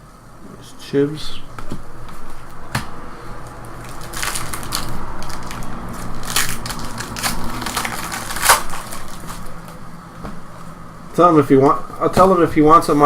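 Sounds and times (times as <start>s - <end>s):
foil wrappers crinkling: 3.4s - 9.8s.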